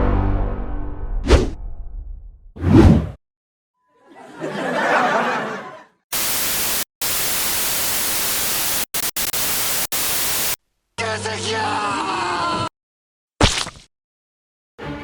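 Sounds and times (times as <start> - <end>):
loud static hiss: 6.1 - 10.6.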